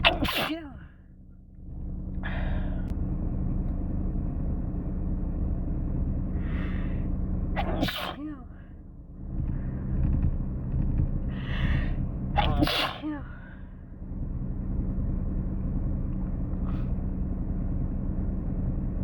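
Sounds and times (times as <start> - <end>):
person sneezing: 0.0 - 0.8, 7.6 - 8.3, 12.4 - 13.3
low steady hum: 0.0 - 19.0
person breathing in: 2.2 - 2.9, 6.4 - 7.1, 11.3 - 12.0.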